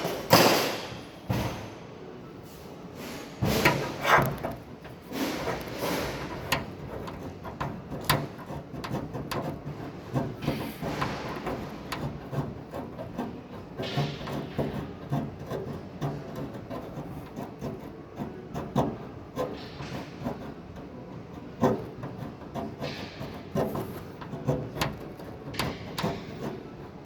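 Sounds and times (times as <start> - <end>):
rasping rubbing on metal: 3.4 - 27.0
tools clicking and knocking on metal: 18.7 - 27.0.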